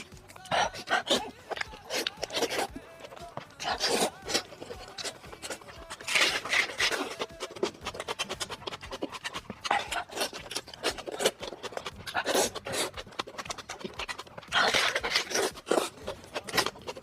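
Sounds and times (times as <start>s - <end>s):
mouth clicks and wet chewing: 0.0s - 17.0s.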